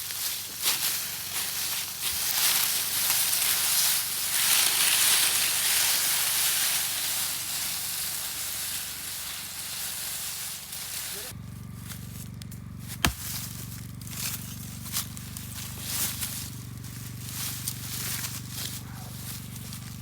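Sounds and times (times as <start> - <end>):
meat sizzling over campfire: 0.0 - 11.3.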